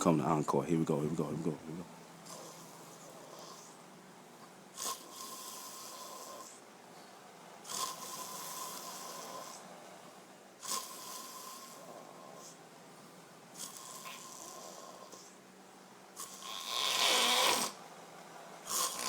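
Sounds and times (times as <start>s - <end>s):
person snoring loudly: 16.2s - 17.8s, 18.7s - 19.0s.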